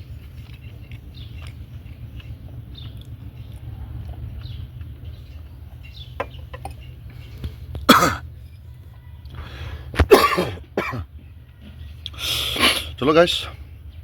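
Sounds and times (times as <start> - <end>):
faint eating clicks: 0.0 - 6.0
man coughing hard: 7.8 - 8.3, 10.0 - 11.1.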